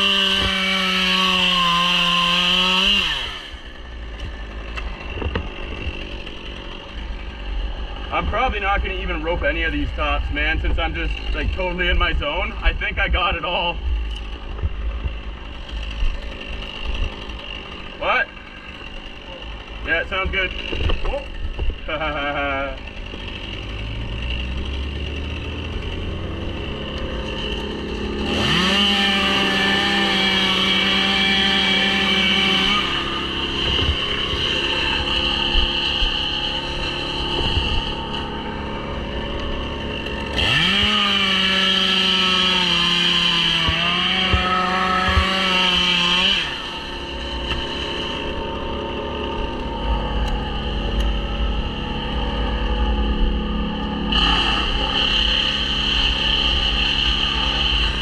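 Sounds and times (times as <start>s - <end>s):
chainsaw idling and revving: 0.0s - 58.0s.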